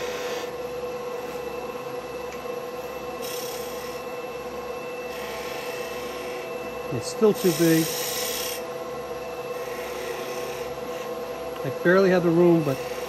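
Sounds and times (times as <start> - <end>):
turning tool cutting wood: 0.0 - 1.6, 2.7 - 4.2, 5.0 - 8.7, 9.4 - 13.0
wood lathe humming: 0.0 - 13.0.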